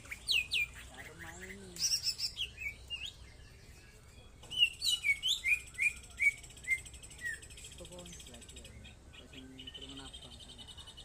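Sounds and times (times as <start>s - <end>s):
bird chirping and whistling: 0.0s - 3.3s, 4.5s - 7.9s.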